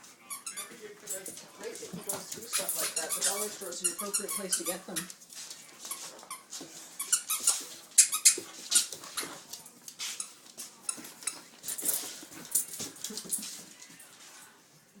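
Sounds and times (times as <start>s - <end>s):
dog chewing on a toy: 0.3s - 5.2s.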